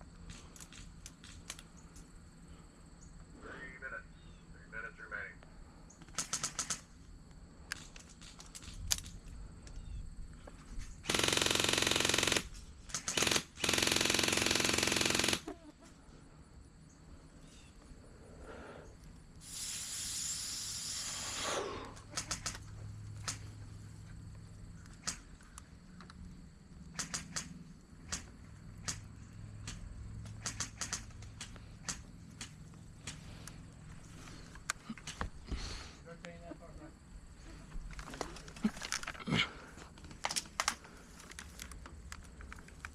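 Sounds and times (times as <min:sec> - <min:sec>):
sharp single snaps: 0:00.2 - 0:02.1, 0:06.0 - 0:06.9, 0:07.6 - 0:09.8, 0:21.4 - 0:23.5, 0:24.8 - 0:26.2, 0:26.8 - 0:33.6
airsoft gun full auto fire: 0:06.1 - 0:06.9, 0:11.0 - 0:15.5, 0:27.0 - 0:27.5
short hiss: 0:19.4 - 0:22.5.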